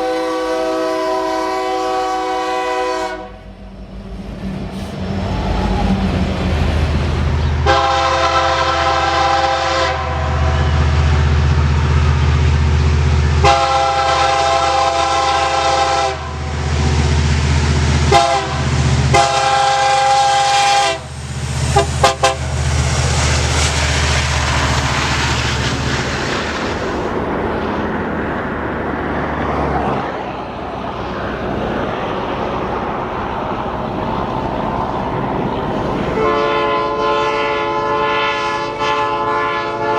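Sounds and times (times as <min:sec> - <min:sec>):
train horn blasts: 0:00.0 - 0:03.5, 0:07.6 - 0:11.3, 0:13.4 - 0:16.7, 0:18.0 - 0:21.1, 0:21.7 - 0:22.6, 0:36.1 - 0:39.9
train rumbling past: 0:00.0 - 0:39.9.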